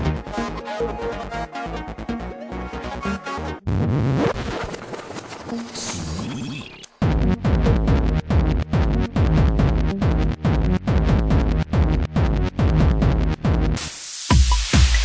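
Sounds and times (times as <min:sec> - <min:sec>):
stuttering electronic beeps: 0:05.6 - 0:06.9
bass line: 0:07.0 - 0:13.8
heavy kick drum beat: 0:07.0 - 0:15.0.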